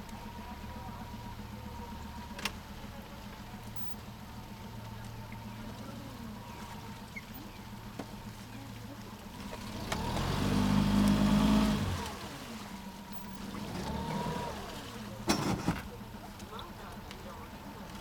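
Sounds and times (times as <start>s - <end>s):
low engine hum: 0.0s - 18.0s
vehicle engine passing by: 9.3s - 15.7s.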